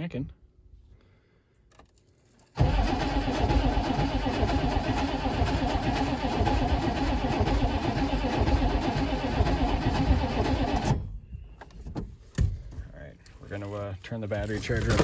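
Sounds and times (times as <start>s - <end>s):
diesel engine cranking on starter: 2.5s - 11.2s.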